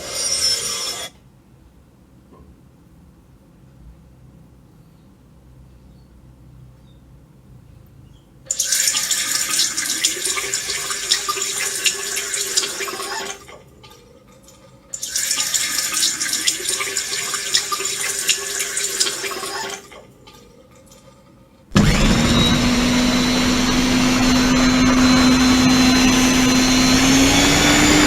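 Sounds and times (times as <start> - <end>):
tap water running into sink: 8.5 - 13.4, 15.0 - 19.8.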